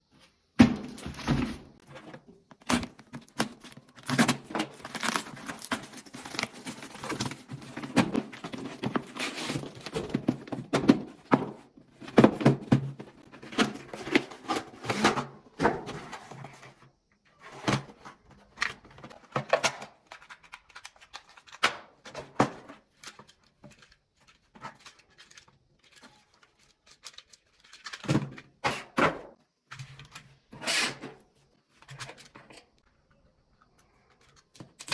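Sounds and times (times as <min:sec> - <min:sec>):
packaging tearing and crinkling: 0:02.6 - 0:10.0.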